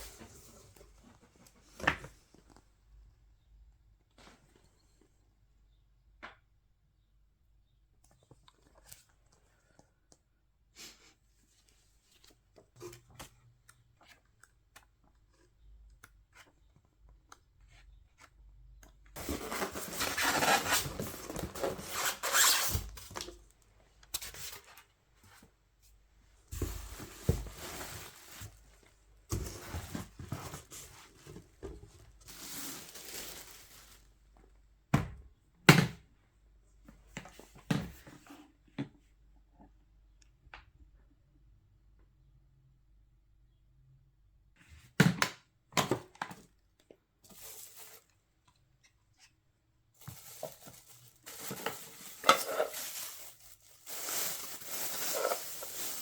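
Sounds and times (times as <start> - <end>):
packaging rustling and tearing: 19.2 - 23.3, 32.2 - 34.1, 47.3 - 48.1, 50.0 - 56.0.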